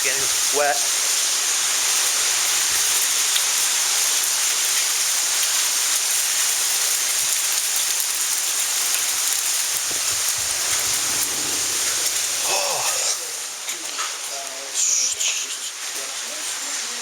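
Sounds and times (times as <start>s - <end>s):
heavy rain pouring: 9.2s - 13.6s.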